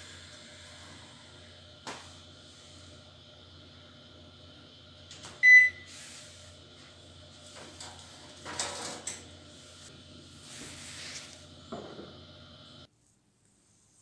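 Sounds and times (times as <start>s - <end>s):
microwave beep: 5.2s - 5.9s.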